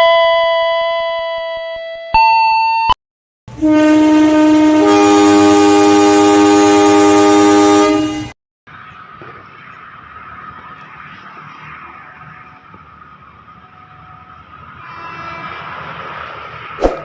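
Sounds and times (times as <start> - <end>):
electric train horn blast: 3.5 - 8.3, 14.7 - 16.3.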